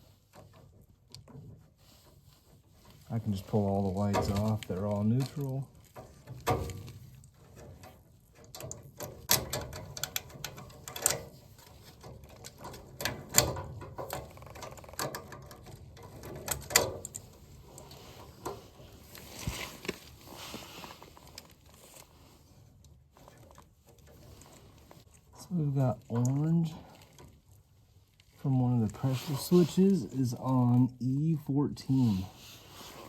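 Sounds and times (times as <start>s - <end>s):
brief rustle: 5.3s - 25.4s.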